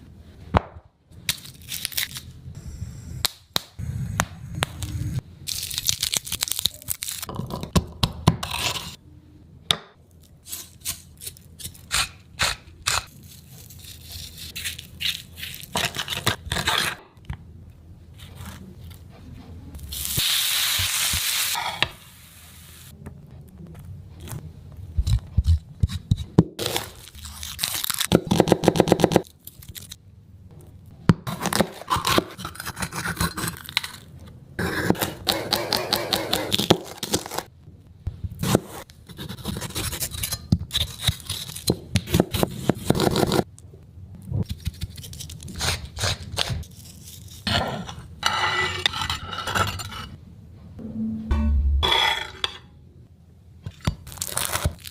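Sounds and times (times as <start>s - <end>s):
utensil scraping cookware: 51.3s - 52.7s.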